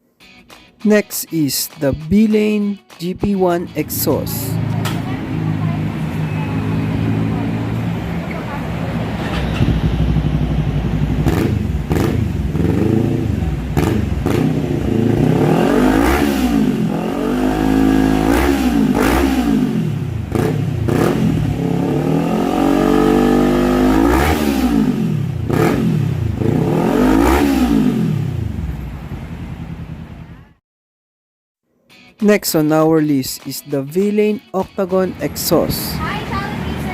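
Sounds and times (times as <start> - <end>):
motorcycle engine revving: 4.4 - 28.7.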